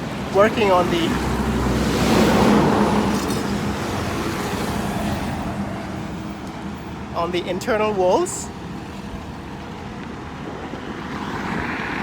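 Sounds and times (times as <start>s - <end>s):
vehicle passing by: 0.4s - 5.8s.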